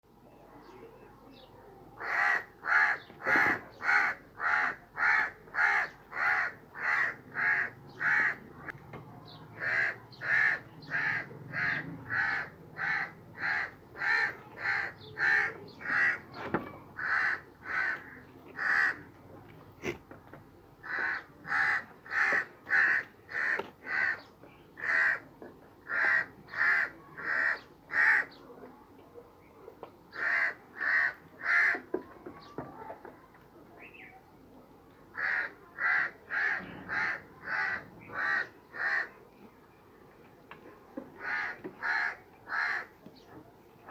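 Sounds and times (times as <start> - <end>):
crow cawing: 2.0 - 8.4, 9.6 - 16.3, 17.0 - 19.0, 20.8 - 24.2, 24.8 - 25.2, 25.9 - 28.3, 30.2 - 31.8, 35.1 - 39.2, 41.2 - 42.9.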